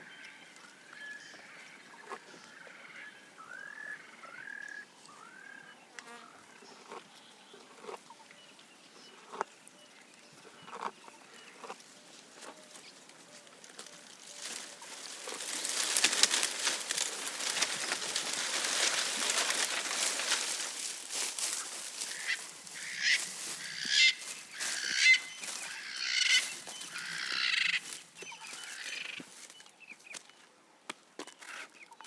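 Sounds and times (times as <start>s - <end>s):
bird calling: 10.4s - 29.6s
leaves and twigs rustling: 11.6s - 30.4s.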